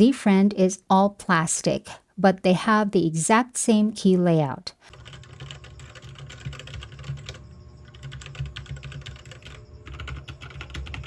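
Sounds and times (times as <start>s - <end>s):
mechanical keyboard typing: 4.9s - 11.0s.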